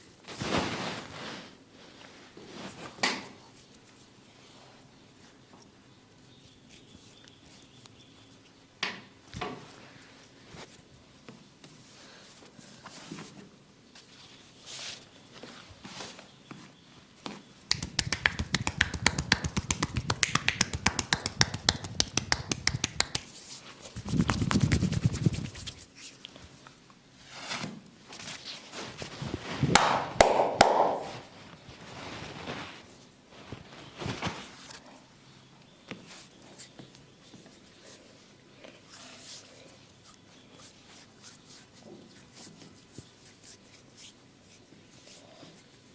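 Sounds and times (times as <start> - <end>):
hand slaps on body: 17.7 - 23.3, 29.7 - 31.2
sharp snaps: 17.7 - 23.3, 29.7 - 31.2.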